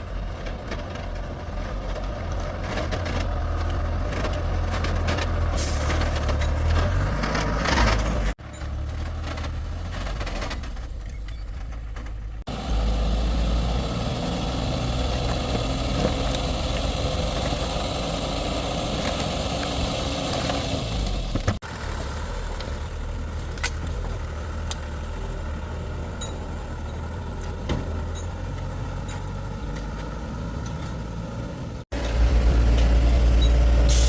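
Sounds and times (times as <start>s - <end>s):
heavy vehicle engine idling: 12.2s - 29.6s.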